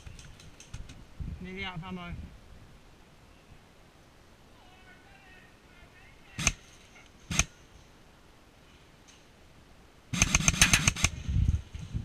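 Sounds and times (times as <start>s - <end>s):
airsoft gun shots: 6.4s - 6.6s, 7.3s - 7.5s, 10.1s - 11.2s.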